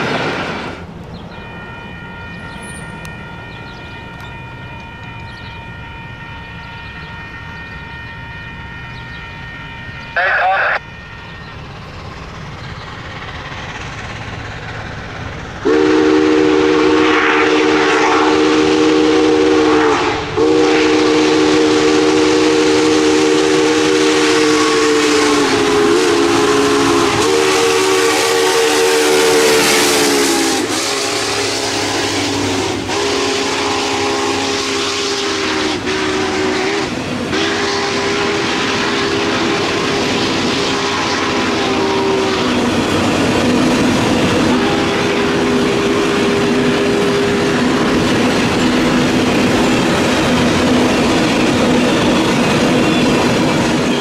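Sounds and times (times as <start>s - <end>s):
steam train hiss and rumble: 0.0s - 1.0s, 10.2s - 54.0s
steam locomotive whistle blasts: 15.6s - 42.7s, 44.2s - 47.9s.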